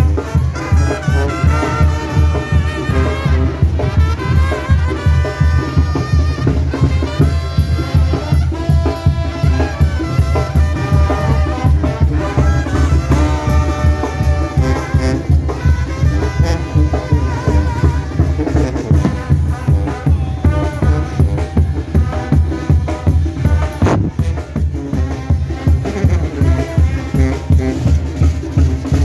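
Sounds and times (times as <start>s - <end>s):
brass band music: 0.0s - 29.0s
rapid drum and bass beat: 17.8s - 29.0s.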